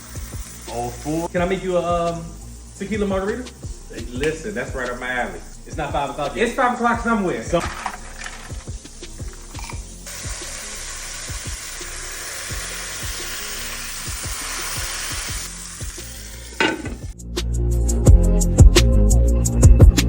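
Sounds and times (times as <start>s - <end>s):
burger patties sizzling in a pan: 0.0s - 1.4s, 3.8s - 17.2s
background music with a beat: 0.0s - 20.0s.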